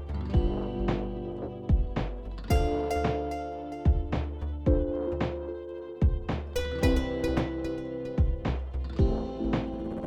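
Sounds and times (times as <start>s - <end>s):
bass line with steady beat: 0.0s - 10.0s
synth chords: 0.0s - 10.0s.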